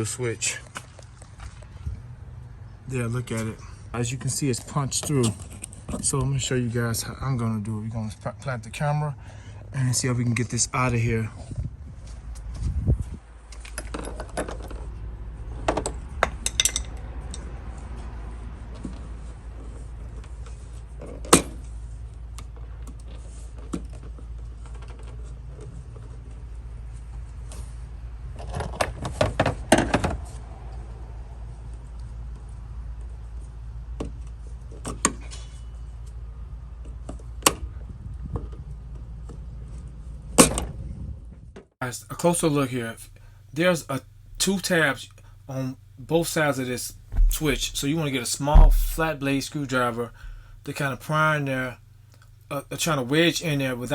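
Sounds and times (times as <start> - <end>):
steady low rumble: 45.8 - 51.2
sharp clicks and light knocks: 47.1 - 49.6.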